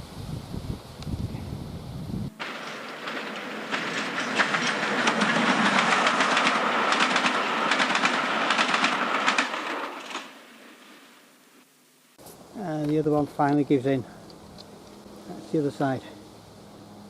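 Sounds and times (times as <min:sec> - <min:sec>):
train wheels clattering on track: 0:02.4 - 0:10.8.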